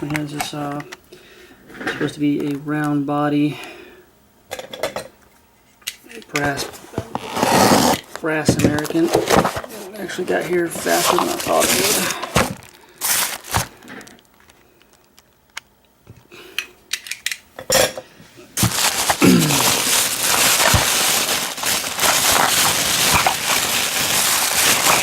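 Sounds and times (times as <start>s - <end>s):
packaging crackling and tearing: 6.4s - 15.6s, 18.6s - 25.0s.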